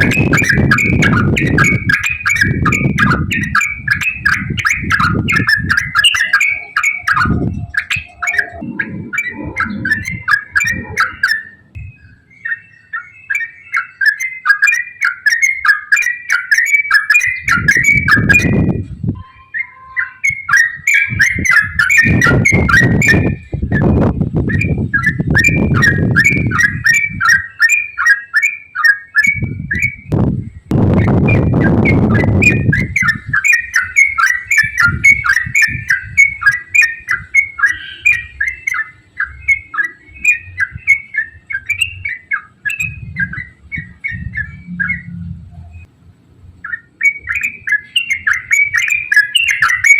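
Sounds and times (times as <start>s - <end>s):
low rumbling noise: 0.0s - 12.4s, 17.4s - 19.3s, 29.4s - 36.5s, 37.1s - 49.9s.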